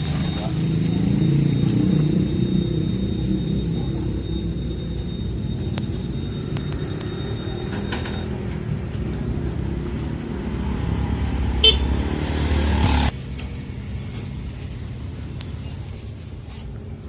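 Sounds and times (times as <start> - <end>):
vehicle engine running: 0.0 - 16.3.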